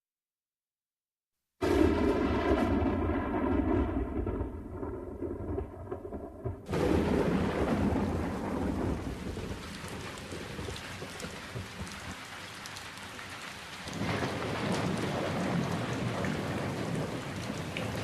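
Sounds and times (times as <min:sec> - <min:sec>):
thunder rumbling: 0:01.6 - 0:12.4, 0:13.8 - 0:18.0
steady rain: 0:06.7 - 0:18.0.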